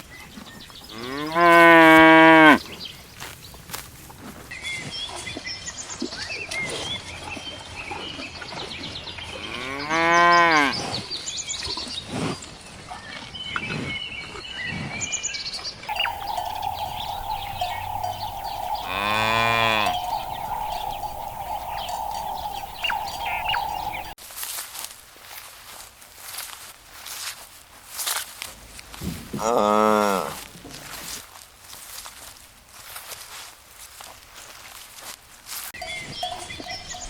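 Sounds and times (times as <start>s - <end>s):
cattle mooing: 0.9s - 2.6s, 9.4s - 10.8s, 15.9s - 24.1s, 29.4s - 30.4s
small birds chirping: 15.9s - 24.2s, 35.8s - 37.0s
steady droning tone: 15.9s - 24.2s.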